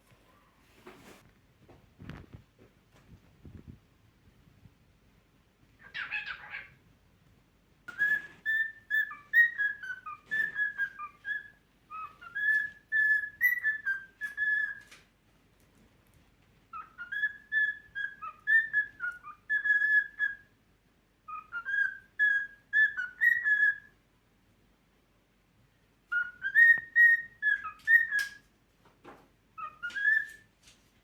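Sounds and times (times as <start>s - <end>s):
cockatiel whistling a tune: 7.9s - 14.9s, 16.7s - 20.6s, 21.2s - 24.0s, 26.1s - 28.4s, 29.6s - 30.5s.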